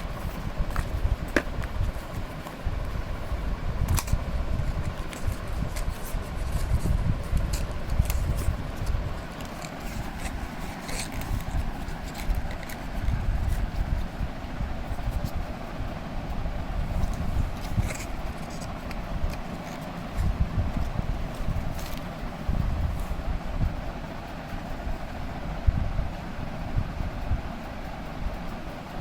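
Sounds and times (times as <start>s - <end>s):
low microphone rumble: 0.0s - 27.6s
packaging clicks and scrapes: 3.9s - 13.8s, 17.0s - 20.3s, 21.4s - 22.1s.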